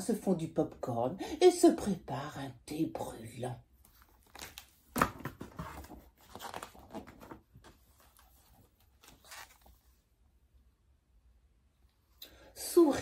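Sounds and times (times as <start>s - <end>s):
material rustling and crinkling: 3.8s - 10.3s.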